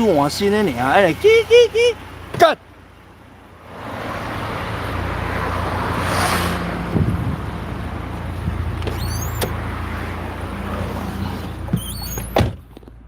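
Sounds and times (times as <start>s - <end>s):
car engine hum: 0.0s - 13.0s
road noise: 0.0s - 13.0s
high-pitched chassis squeaks: 8.8s - 9.8s, 10.6s - 12.8s.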